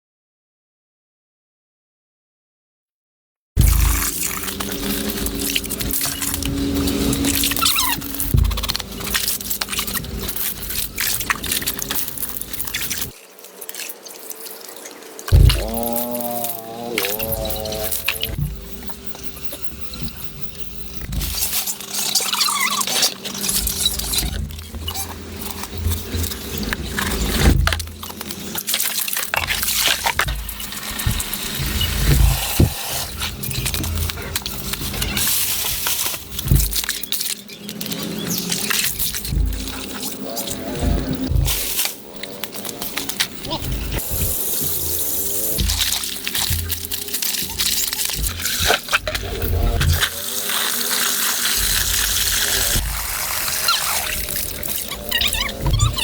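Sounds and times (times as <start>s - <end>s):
water splashing: 3.6s - 20.3s, 38.2s - 56.0s.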